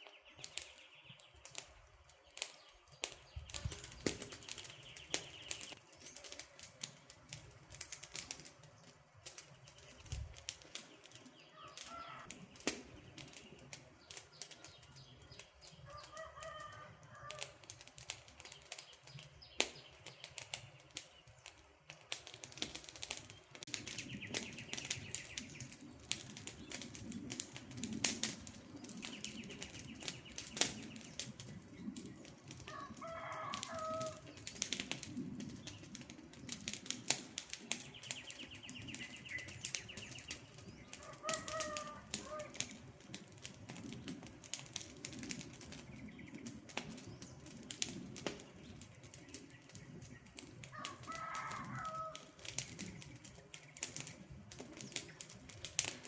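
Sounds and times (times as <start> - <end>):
campfire crackling and popping: 0.0 - 56.0
bird calling: 11.4 - 12.4, 37.8 - 42.6.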